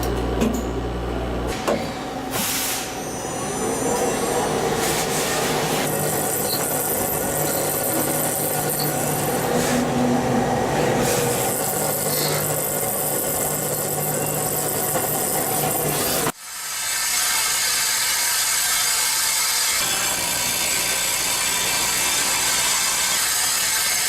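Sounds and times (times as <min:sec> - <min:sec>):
lathe mechanical whir: 0:02.9 - 0:16.4
cutting and coolant hiss: 0:11.0 - 0:24.0.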